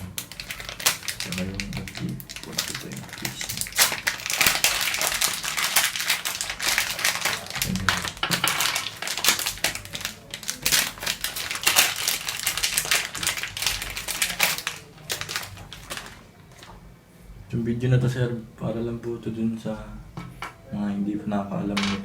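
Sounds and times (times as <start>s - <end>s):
cable crinkling: 0.0s - 16.8s
plastic parts clicking: 0.2s - 16.2s.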